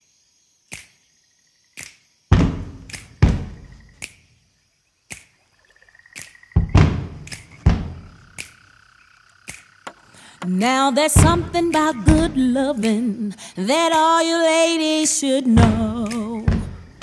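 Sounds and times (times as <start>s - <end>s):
heavy booming hits: 2.3s - 3.7s, 6.6s - 8.2s
sharp clicks: 6.2s - 8.6s, 9.3s - 13.1s.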